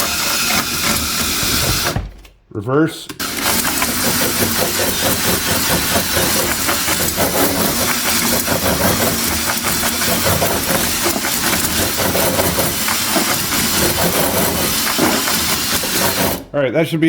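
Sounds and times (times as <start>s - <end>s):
drill motor whirring: 0.0s - 2.1s, 3.2s - 16.5s
abrasive balls scrubbing metal bore: 3.2s - 16.6s.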